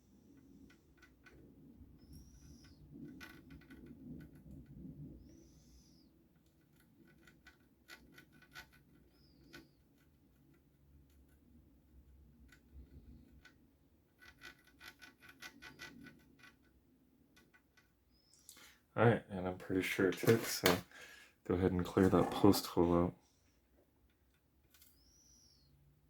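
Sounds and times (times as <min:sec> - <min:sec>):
faint small clicks: 0:24.0 - 0:25.4.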